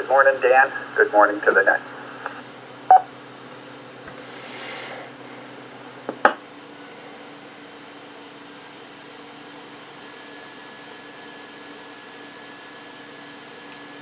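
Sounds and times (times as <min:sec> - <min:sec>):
radio receiver hiss: 0:00.0 - 0:03.1, 0:05.8 - 0:06.5
faint steady hum: 0:00.0 - 0:12.5.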